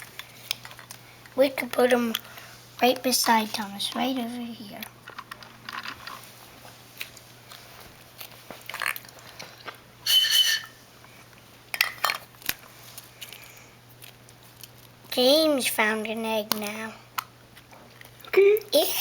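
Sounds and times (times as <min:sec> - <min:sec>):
plastic toys clicking and knocking: 0:01.6 - 0:06.2.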